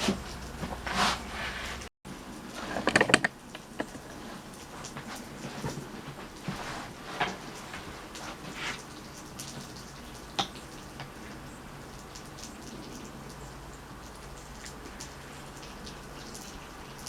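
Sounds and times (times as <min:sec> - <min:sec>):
light rain pattering: 0:03.4 - 0:17.0.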